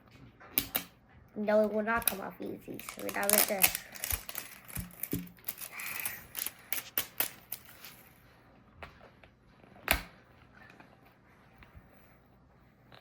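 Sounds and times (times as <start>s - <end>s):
plastic packaging crinkling: 2.0s - 8.0s.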